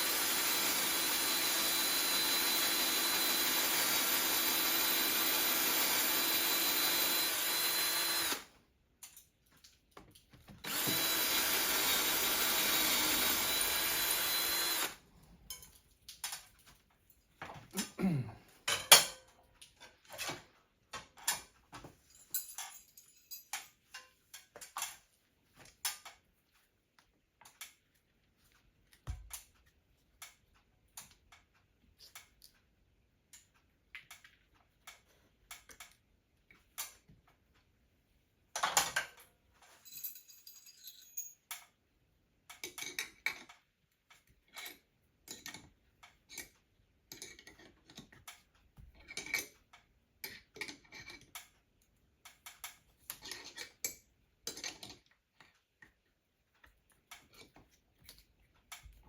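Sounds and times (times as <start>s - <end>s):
metallic clicks and clinks: 21.2s - 25.0s, 38.6s - 41.8s.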